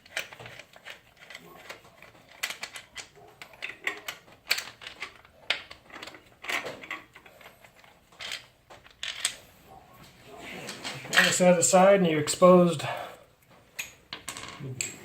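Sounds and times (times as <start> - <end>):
hand tool clicks and metal clatter: 0.0 - 9.4, 10.7 - 11.5.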